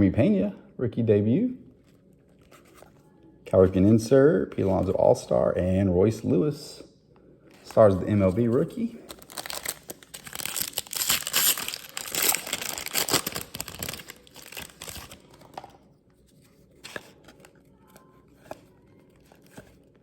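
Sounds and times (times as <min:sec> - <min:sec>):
wrapper tearing and crinkling: 0:09.1 - 0:15.6.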